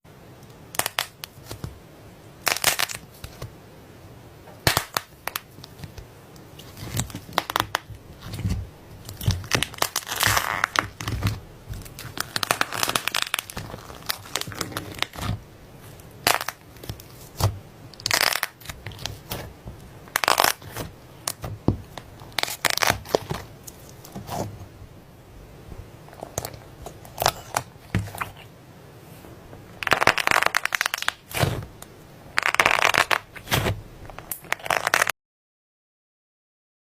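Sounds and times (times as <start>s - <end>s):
slime crackling and popping: 0.7s - 1.7s, 2.4s - 3.4s, 4.6s - 24.4s, 26.1s - 28.5s, 29.8s - 35.1s.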